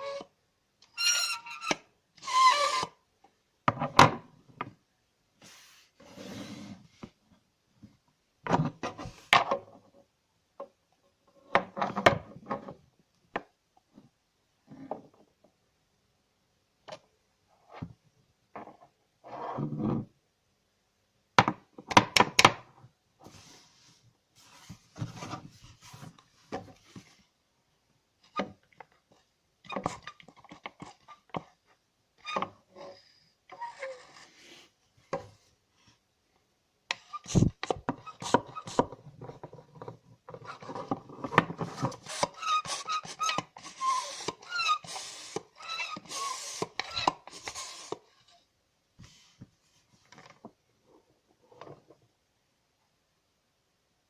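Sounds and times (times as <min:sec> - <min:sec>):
squeaking pump strokes: 0:42.0 - 0:48.0.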